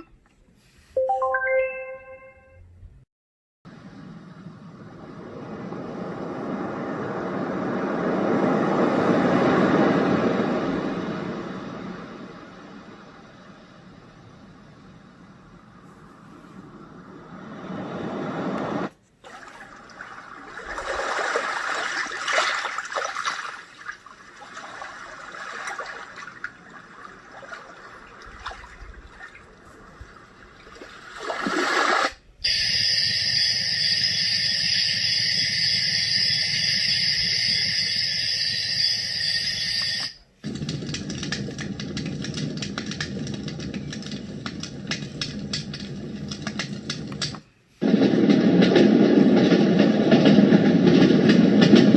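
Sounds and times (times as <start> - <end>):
flowing water-like sound: 17.2 - 32.2
steady high hiss: 32.5 - 40.3.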